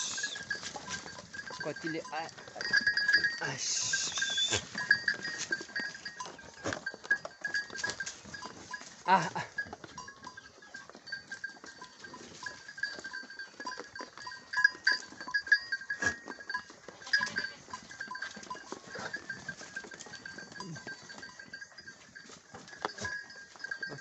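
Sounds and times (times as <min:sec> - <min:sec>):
steady high chirping: 0:00.0 - 0:00.6, 0:02.7 - 0:05.4
goats eating clicks and knocks: 0:00.0 - 0:24.0.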